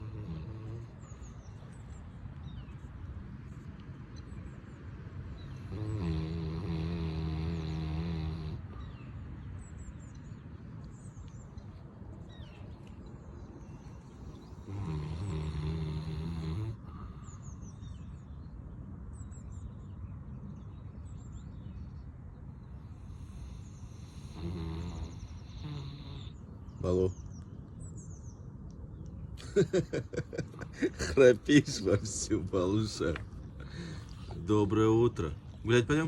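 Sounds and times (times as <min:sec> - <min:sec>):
dog snoring: 0:00.0 - 0:01.2, 0:05.6 - 0:08.8, 0:14.6 - 0:17.0, 0:23.1 - 0:26.4.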